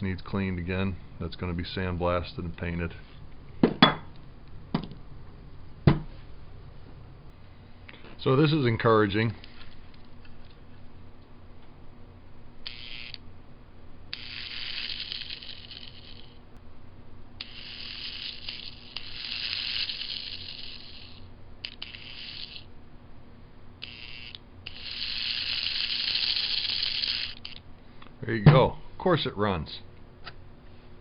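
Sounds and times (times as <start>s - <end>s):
toy train motor whirring: 12.6s - 13.2s, 14.1s - 16.4s, 17.4s - 22.7s, 23.8s - 27.6s.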